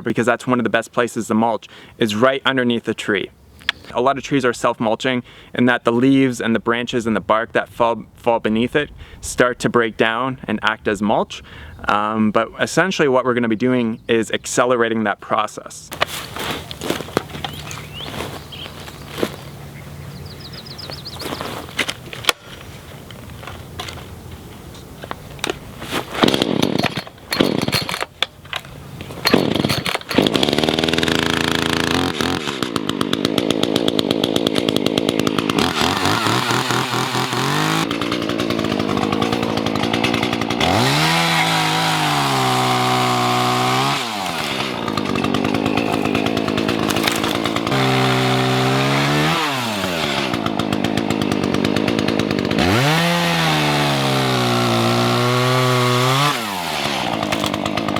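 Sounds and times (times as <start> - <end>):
chainsaw cutting branches: 15.9 - 57.9.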